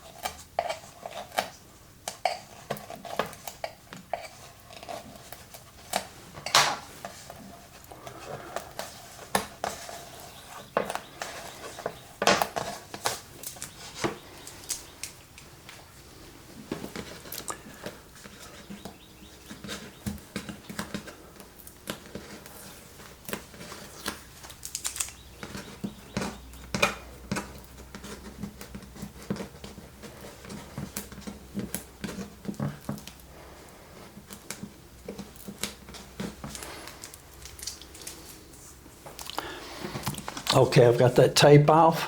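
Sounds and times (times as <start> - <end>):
sticky tape peeling: 21.8 - 25.6.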